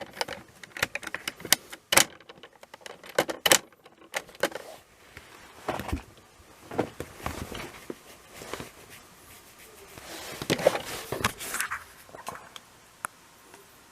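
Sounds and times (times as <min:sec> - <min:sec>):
plastic toy parts clicking: 0:00.0 - 0:04.6.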